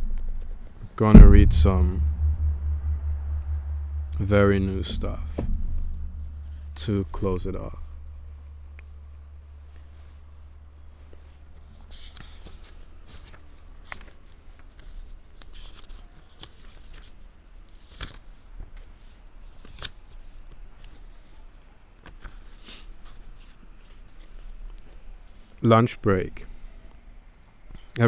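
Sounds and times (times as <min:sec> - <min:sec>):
low steady hum: 0:01.1 - 0:09.5.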